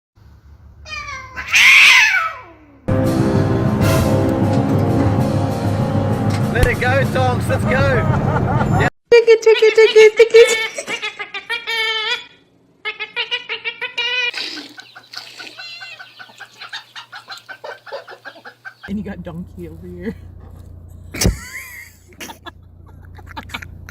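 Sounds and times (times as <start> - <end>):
chicken squawk: 0.9 - 2.8, 10.9 - 18.9
sustained chord tones: 2.9 - 8.8
pulsing bass: 2.9 - 8.9, 18.9 - 23.9
high rapidly repeated calls: 12.9 - 19.0
chickens clucking: 12.9 - 19.1.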